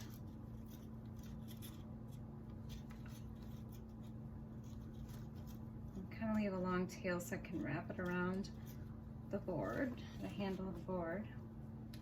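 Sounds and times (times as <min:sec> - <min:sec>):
hands rustling twine: 0:00.0 - 0:06.6
steady low hum: 0:00.0 - 0:12.0.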